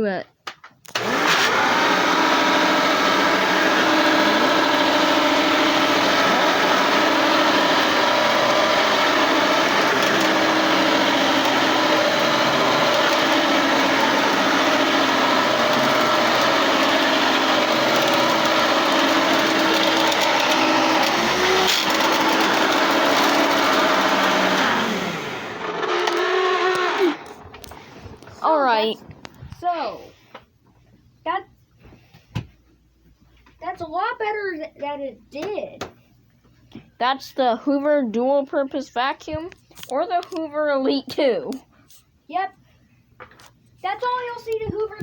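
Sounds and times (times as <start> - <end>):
vacuum cleaner winding down: 0.9 - 28.9
vacuum cleaner motor running: 0.9 - 29.0.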